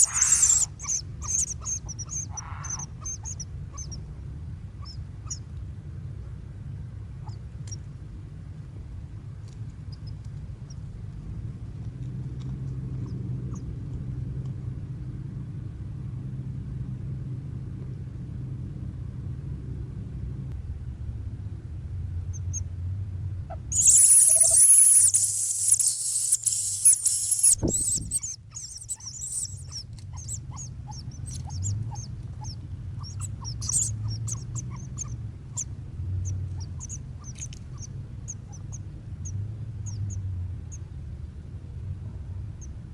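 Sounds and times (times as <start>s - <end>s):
bird chirps: 0.0s - 4.0s, 4.8s - 5.4s, 23.7s - 40.8s
low rumble: 0.0s - 23.8s, 26.7s - 42.9s.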